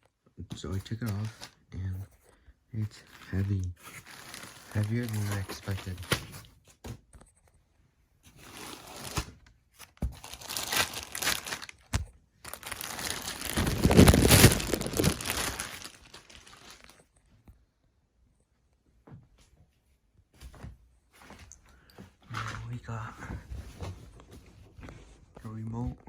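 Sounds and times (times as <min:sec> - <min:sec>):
packaging crinkling and tearing: 0:00.8 - 0:01.6, 0:03.0 - 0:06.5, 0:08.4 - 0:17.0.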